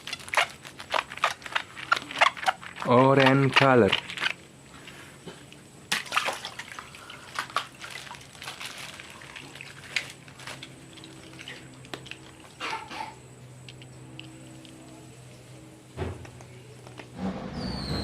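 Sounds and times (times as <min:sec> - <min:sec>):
steady low hum: 0:03.8 - 0:18.0
packaging rustling: 0:07.4 - 0:10.7.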